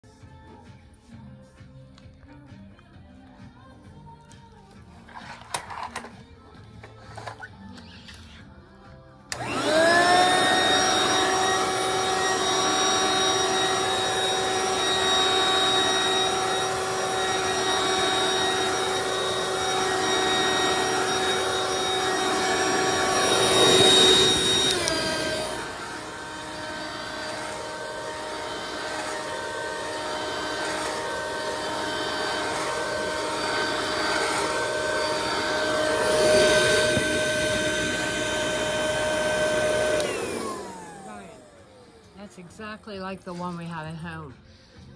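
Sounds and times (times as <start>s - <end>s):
vacuum cleaner motor whine: 9.3s - 43.7s.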